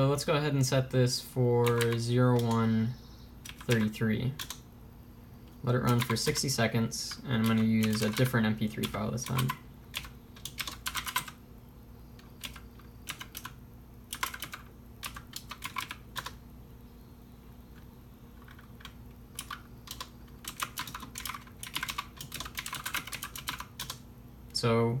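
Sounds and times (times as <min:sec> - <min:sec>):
faint steady hum: 0:00.0 - 0:25.0
keyboard keys clicking: 0:01.6 - 0:02.7, 0:03.4 - 0:04.6, 0:05.8 - 0:06.4, 0:07.4 - 0:11.4, 0:12.2 - 0:16.4, 0:18.4 - 0:24.0.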